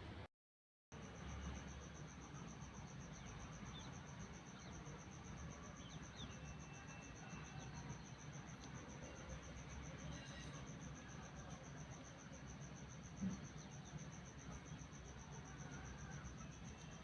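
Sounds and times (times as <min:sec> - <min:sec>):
cricket chirping: 0:01.0 - 0:17.0
faint bird chirps: 0:02.8 - 0:11.5.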